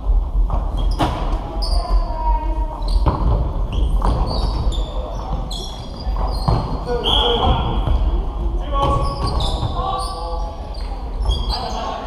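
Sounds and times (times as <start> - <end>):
balls thudding on floor and walls: 0.0 - 2.0, 2.6 - 9.9
sneakers squeaking on court: 0.6 - 2.1, 2.7 - 8.1, 8.8 - 12.0.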